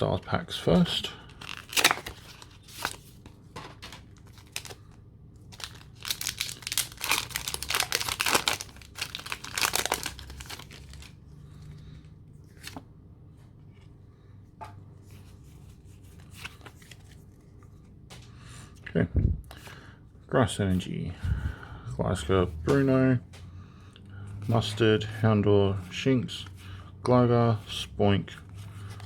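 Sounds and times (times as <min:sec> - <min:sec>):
foil wrapper tearing and crinkling: 0:01.4 - 0:03.0, 0:05.5 - 0:11.1.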